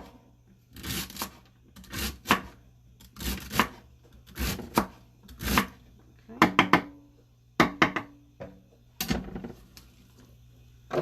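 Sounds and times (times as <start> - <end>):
knife chopping on cutting board: 0.8 - 5.8.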